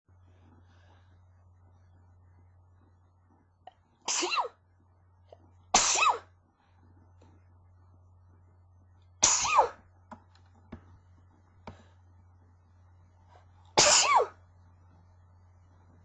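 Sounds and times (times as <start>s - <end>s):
person sneezing: 4.1s - 4.6s, 5.8s - 6.3s, 9.2s - 9.8s, 13.8s - 14.4s.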